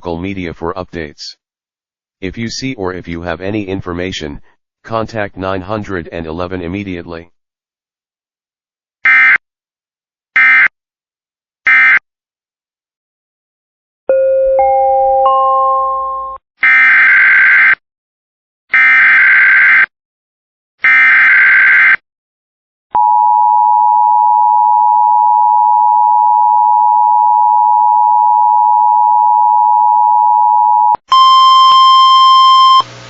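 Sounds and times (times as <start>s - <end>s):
two-tone attention signal: 31.1s - 32.9s.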